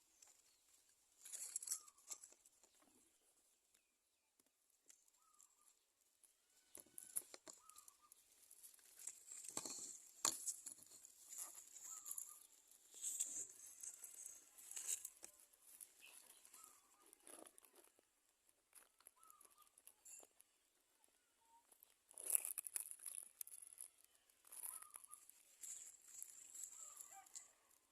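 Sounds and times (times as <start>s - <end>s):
faint bird chirps: 0.0s - 8.4s, 11.3s - 15.1s, 15.8s - 17.7s, 19.0s - 22.0s, 23.8s - 27.8s
dry nesting material rustling: 8.5s - 17.4s.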